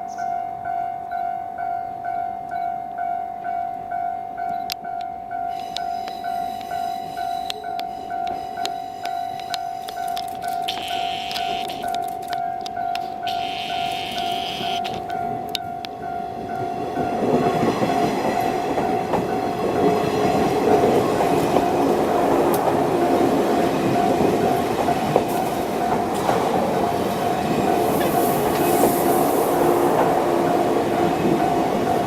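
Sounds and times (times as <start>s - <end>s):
level crossing warning bell: 0.0s - 32.0s
train wheels clattering over rails: 16.6s - 32.0s.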